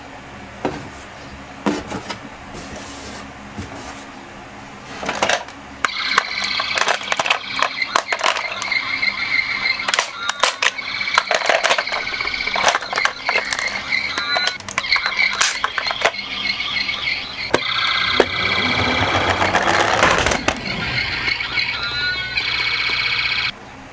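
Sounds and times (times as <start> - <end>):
toy cars clicking and clattering: 5.0 - 16.3, 17.5 - 21.7
electronic ambulance siren: 5.1 - 23.6.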